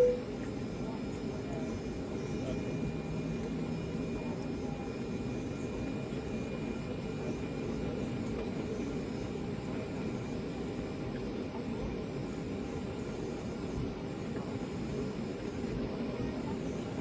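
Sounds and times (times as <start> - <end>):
airplane cabin hum: 0.0 - 17.0.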